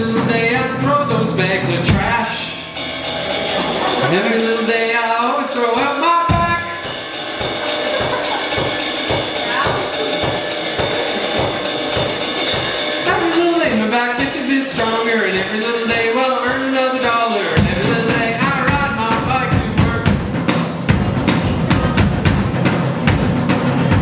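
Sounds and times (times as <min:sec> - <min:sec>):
drum kit beat: 0:00.0 - 0:24.0
live band playing: 0:00.0 - 0:24.0.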